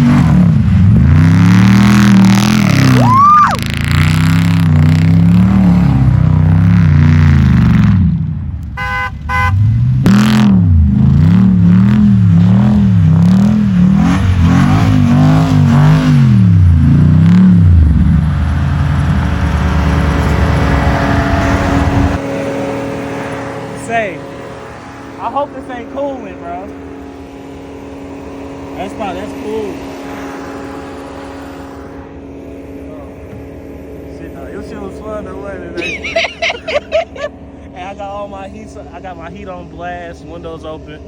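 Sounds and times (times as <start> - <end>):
car engine revving: 0.0 - 41.0.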